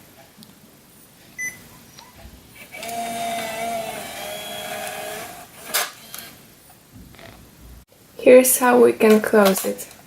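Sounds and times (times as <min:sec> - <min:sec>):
camcorder tape motor whirring: 0:02.6 - 0:06.4.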